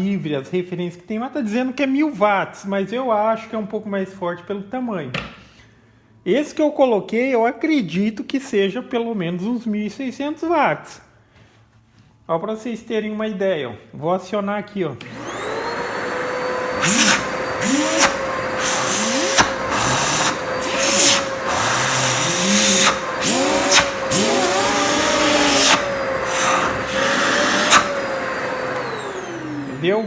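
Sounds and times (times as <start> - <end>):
vacuum cleaner whining: 15.0 - 30.0.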